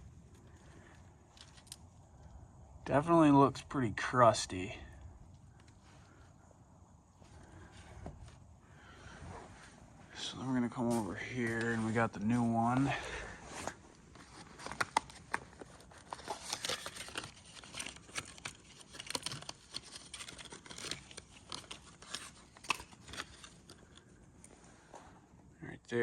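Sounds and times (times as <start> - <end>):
packaging crinkling and tearing: 13.7 - 24.1.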